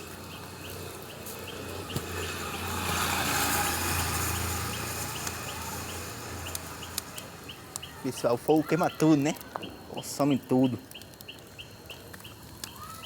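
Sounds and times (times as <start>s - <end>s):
motor vehicle passing by: 0.0s - 7.9s.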